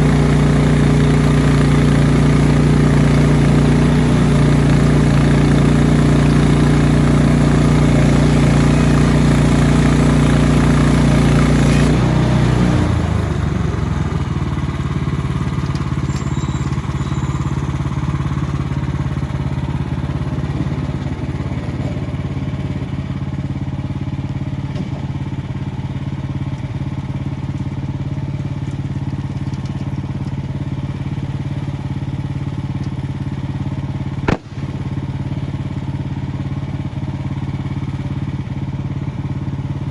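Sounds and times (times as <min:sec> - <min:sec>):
small gasoline engine running: 0:00.0 - 0:39.9.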